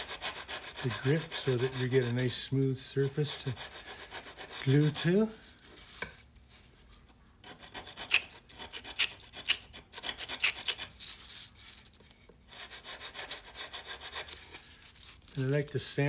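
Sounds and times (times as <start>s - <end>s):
file rasping on sandpaper: 0.0s - 5.5s, 7.4s - 11.6s, 12.5s - 15.6s.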